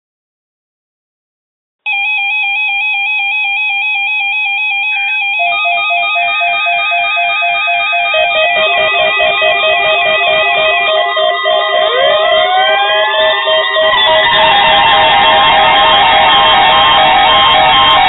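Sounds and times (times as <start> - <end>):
weather radio alarms beeping: 4.7 - 18.0.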